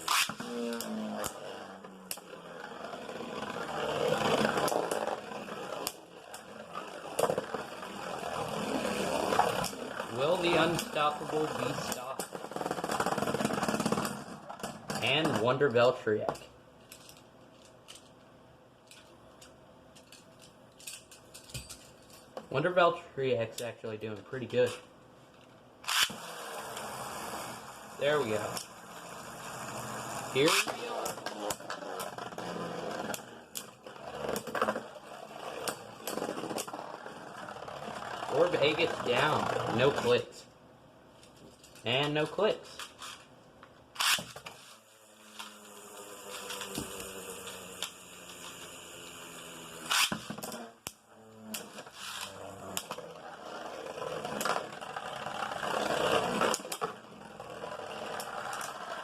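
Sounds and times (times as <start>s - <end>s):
grinding scrapes: 0.0s - 15.2s, 26.1s - 40.3s, 51.6s - 59.0s
spinning tops whirring: 0.0s - 15.2s, 25.8s - 40.3s, 44.0s - 59.0s
spinning tops clacking together: 29.9s - 37.0s, 45.1s - 50.6s.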